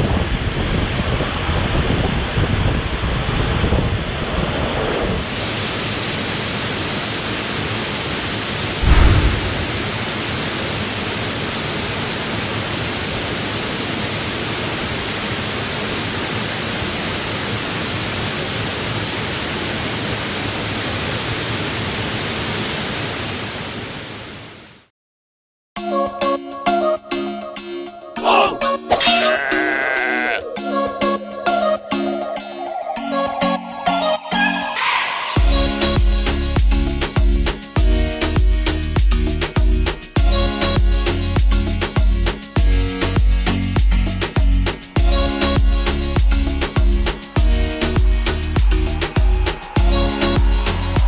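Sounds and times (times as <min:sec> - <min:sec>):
low thump: 0:08.8 - 0:10.2.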